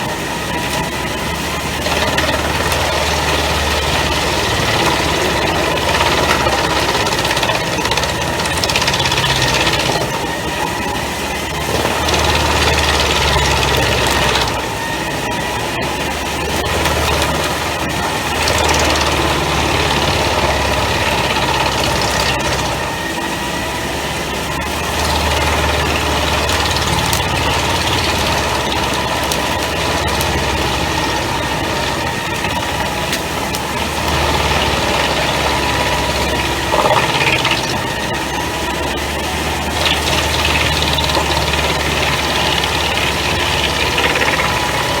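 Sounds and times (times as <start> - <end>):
tractor engine: 0.0 - 45.0
wood chipper drone: 0.0 - 45.0.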